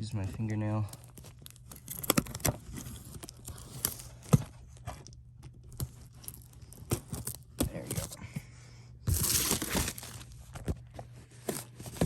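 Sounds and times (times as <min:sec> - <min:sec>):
packaging clicks and crinkles: 0:00.8 - 0:08.1, 0:09.2 - 0:10.4.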